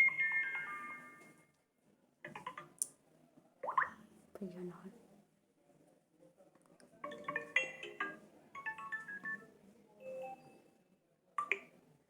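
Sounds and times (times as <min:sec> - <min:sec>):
chiming phone notification tones: 0:07.1 - 0:10.6.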